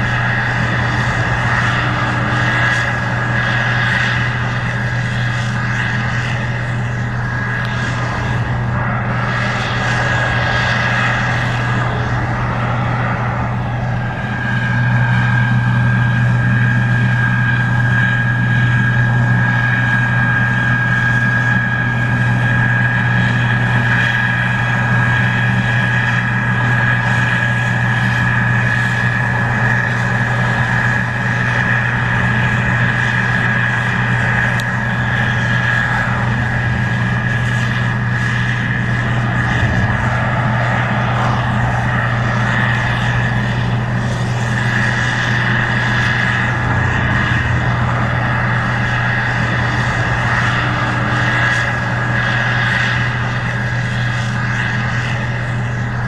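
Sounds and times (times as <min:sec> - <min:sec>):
combine engine drone: 0:00.0 - 0:56.0
high-pitched whine: 0:00.0 - 0:56.0.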